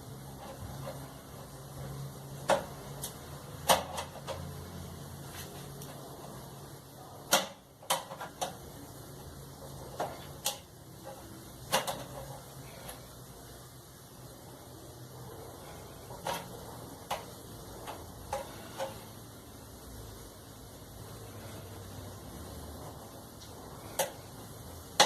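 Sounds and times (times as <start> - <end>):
tools clicking and knocking: 2.4 - 4.5, 7.3 - 8.6, 10.0 - 12.4.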